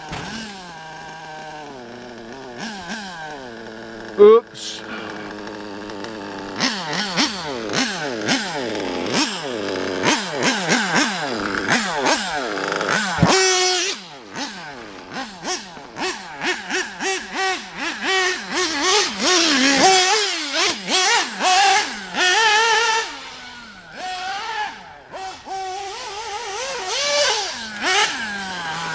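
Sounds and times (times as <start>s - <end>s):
rc car engine revving: 0.0s - 28.9s.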